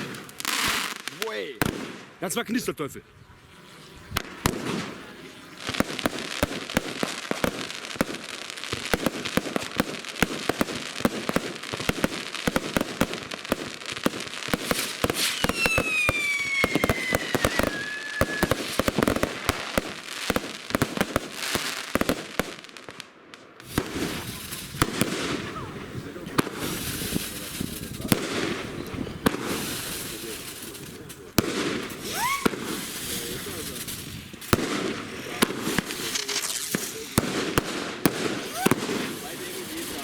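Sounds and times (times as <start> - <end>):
firework crackling and pops: 0.0 - 2.6, 3.8 - 40.0
whistling firework shot: 14.5 - 19.9, 31.5 - 33.6, 34.5 - 39.1.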